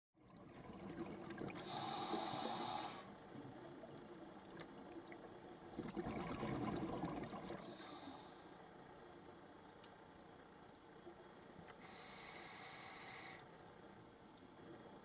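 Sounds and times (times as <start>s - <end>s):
bubbling exhale: 0.6s - 3.1s, 5.8s - 8.3s
diver breathing through regulator: 1.6s - 3.2s, 11.8s - 13.5s.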